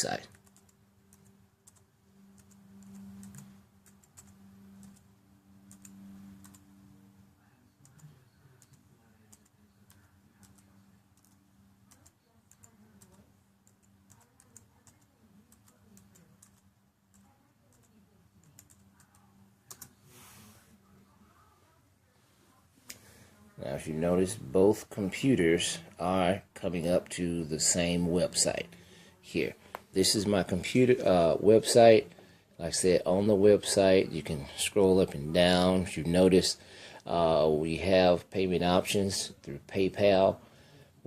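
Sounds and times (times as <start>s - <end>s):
typing on laptop keyboard: 0.2s - 6.6s, 7.8s - 20.0s.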